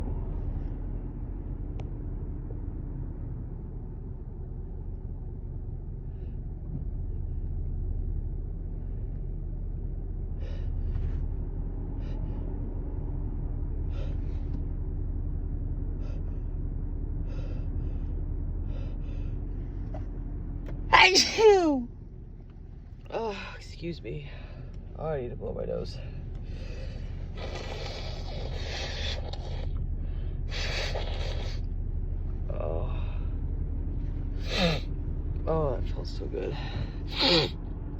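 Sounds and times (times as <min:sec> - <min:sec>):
low rumble: 0:00.0 - 0:37.9
person gasping before a sneeze: 0:21.0 - 0:21.7.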